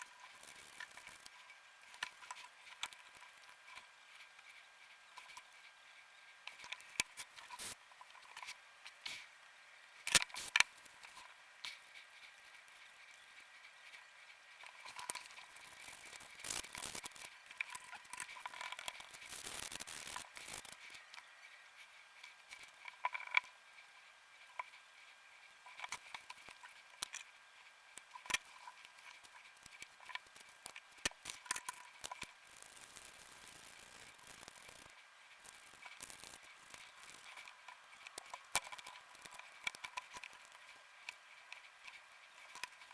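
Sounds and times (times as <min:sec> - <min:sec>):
scraping or rustling: 0:14.6 - 0:21.0.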